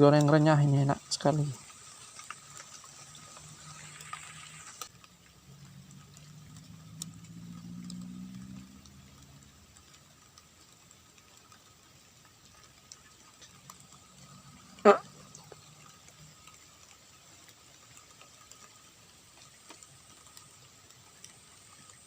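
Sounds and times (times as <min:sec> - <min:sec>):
scattered ticks: 0:00.0 - 0:22.0
vehicle engine passing: 0:00.9 - 0:17.8.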